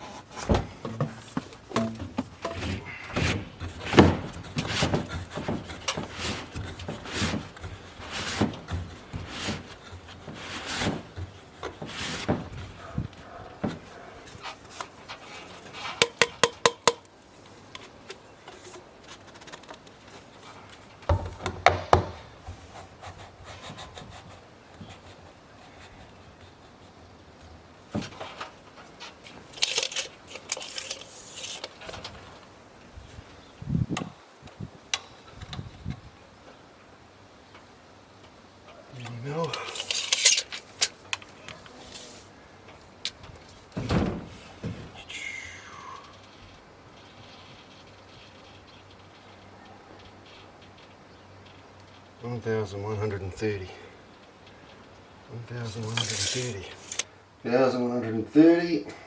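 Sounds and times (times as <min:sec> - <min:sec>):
knocks and taps of timber and tools: 0:00.5 - 0:07.8, 0:16.0 - 0:18.0, 0:21.0 - 0:22.6.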